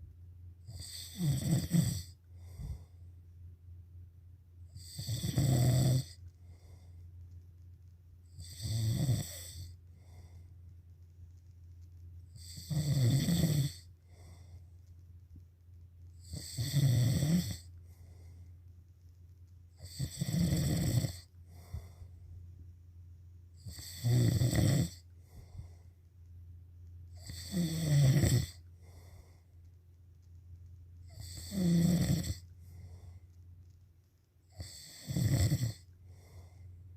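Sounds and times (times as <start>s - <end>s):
constant low hum: 0.0s - 36.9s
loud snoring: 0.7s - 2.8s, 4.7s - 6.2s, 8.3s - 9.7s, 12.4s - 13.9s, 16.2s - 17.7s, 19.8s - 21.8s, 23.6s - 25.0s, 27.2s - 29.1s, 31.1s - 32.4s, 34.5s - 36.4s.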